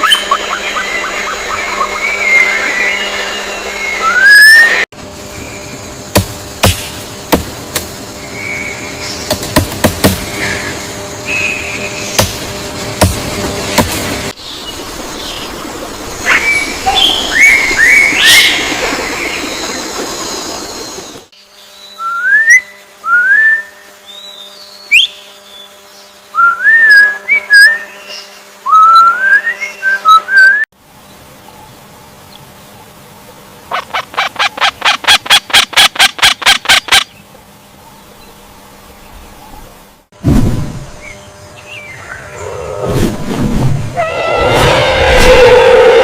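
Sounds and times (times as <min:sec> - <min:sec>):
rising whistled bird notes: 0:00.0 - 0:04.8, 0:21.8 - 0:25.7, 0:26.3 - 0:30.7.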